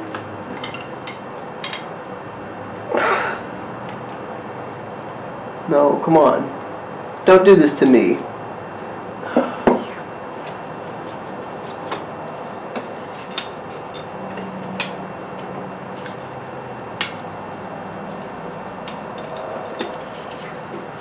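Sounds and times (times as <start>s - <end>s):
tools and engine parts clicking: 18.0s - 21.0s.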